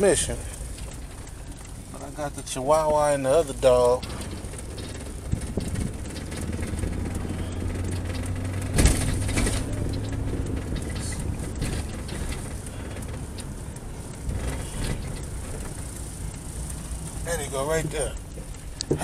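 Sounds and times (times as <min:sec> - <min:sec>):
vehicle engine humming: 0:00.0 - 0:19.0.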